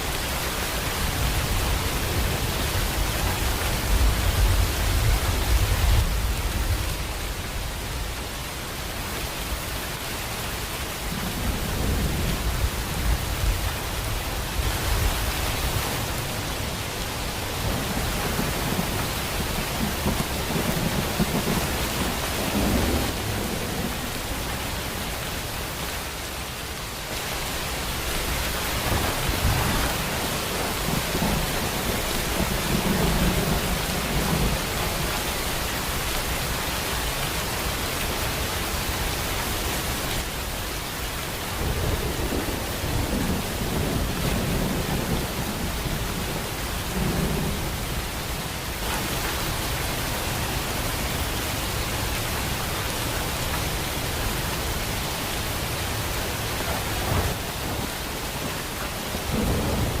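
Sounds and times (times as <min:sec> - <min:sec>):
heavy rain hissing: 0:00.0 - 1:00.0
thunder rumbling: 0:11.0 - 0:25.8, 0:27.4 - 0:36.3, 0:41.5 - 0:49.7, 0:53.7 - 1:00.0.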